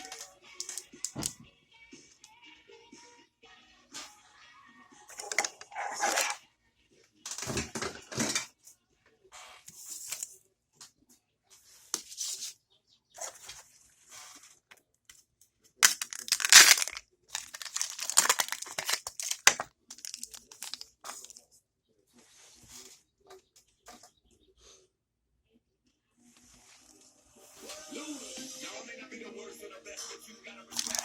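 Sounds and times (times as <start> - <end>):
packaging tearing and crinkling: 15.8 - 20.8, 30.8 - 31.0.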